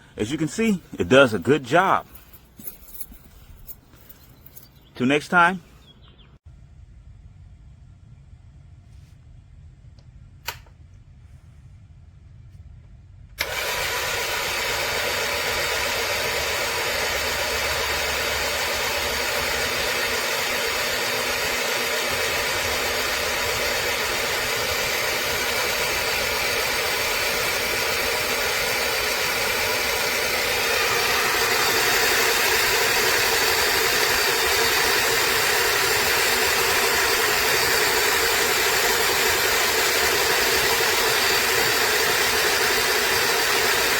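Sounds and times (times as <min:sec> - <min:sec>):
sharp click: 0:10.0 - 0:10.8
motor running: 0:13.4 - 0:43.9.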